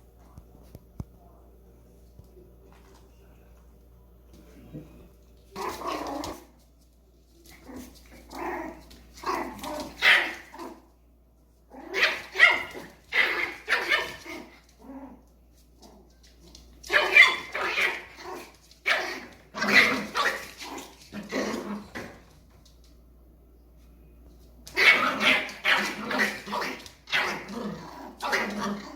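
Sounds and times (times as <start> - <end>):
dog barking: 10.0 - 10.8, 11.9 - 14.4, 16.9 - 18.1.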